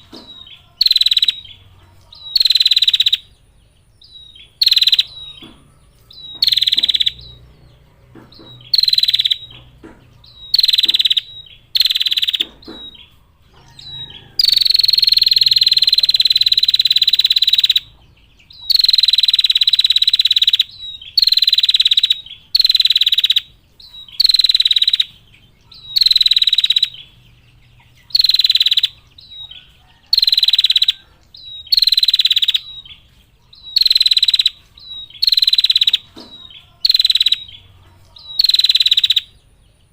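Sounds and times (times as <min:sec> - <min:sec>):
bird giving rapid high trill: 0:00.8 - 0:01.5, 0:02.2 - 0:03.3, 0:04.5 - 0:05.4, 0:06.1 - 0:07.4, 0:08.7 - 0:09.5, 0:10.4 - 0:12.4, 0:13.8 - 0:17.9, 0:18.6 - 0:23.5, 0:24.1 - 0:27.0, 0:28.1 - 0:29.0, 0:30.1 - 0:32.9, 0:33.7 - 0:36.1, 0:36.8 - 0:37.6, 0:38.2 - 0:39.4.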